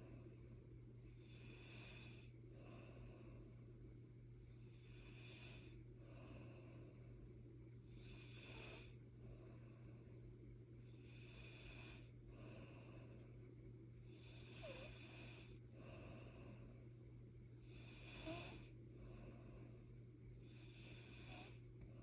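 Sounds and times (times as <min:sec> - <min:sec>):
steady low hum: 0:00.0 - 0:22.0
person snoring faintly: 0:01.2 - 0:03.4, 0:04.6 - 0:07.1, 0:07.9 - 0:10.0, 0:10.9 - 0:13.3, 0:14.0 - 0:16.8, 0:17.6 - 0:19.8, 0:20.4 - 0:21.6.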